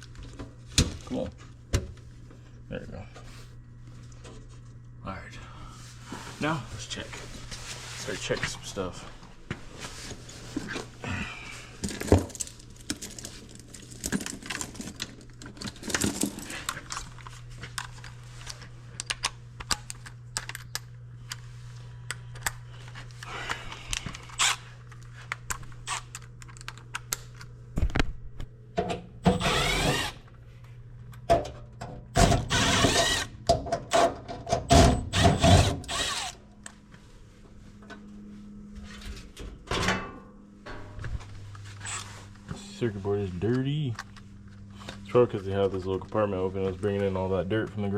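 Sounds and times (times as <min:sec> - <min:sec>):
tools being handled: 0:11.8 - 0:21.4
cordless drill running: 0:24.4 - 0:24.6, 0:29.3 - 0:30.2, 0:32.2 - 0:34.0, 0:34.7 - 0:36.4.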